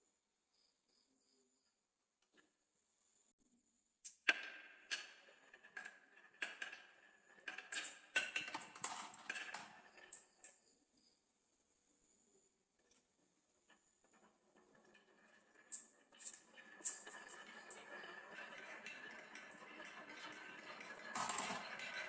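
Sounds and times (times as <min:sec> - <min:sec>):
marbles rolling and clacking: 0:04.1 - 0:10.6, 0:13.7 - 0:22.0.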